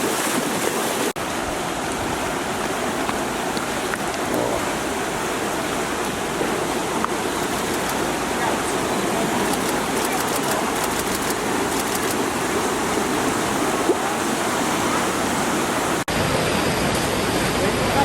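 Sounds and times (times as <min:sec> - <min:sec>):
rushing floodwater: 0:00.0 - 0:18.0.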